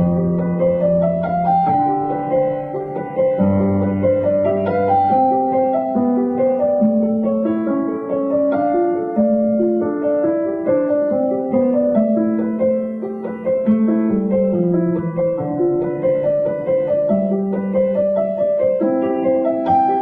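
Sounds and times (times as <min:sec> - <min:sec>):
background piano music: 0:00.0 - 0:20.0.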